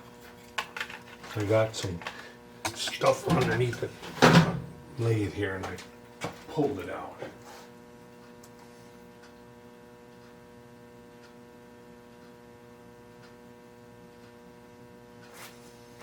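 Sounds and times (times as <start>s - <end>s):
electrical mains hum: 0.0s - 16.0s.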